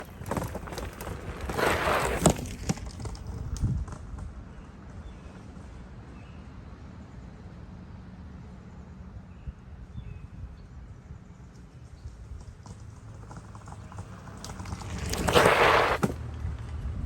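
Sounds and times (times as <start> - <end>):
scooter road noise: 0.0 - 6.0, 11.7 - 17.0.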